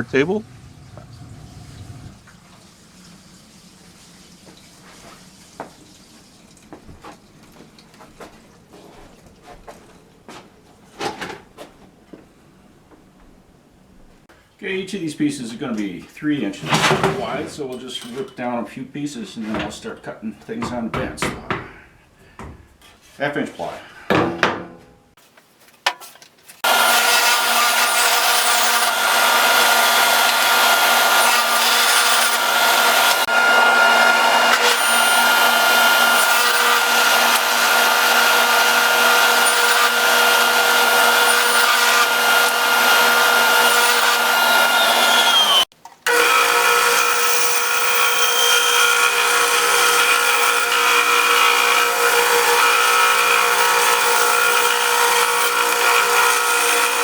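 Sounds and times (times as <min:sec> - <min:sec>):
power saw ripping plywood: 0:25.9 - 0:57.0.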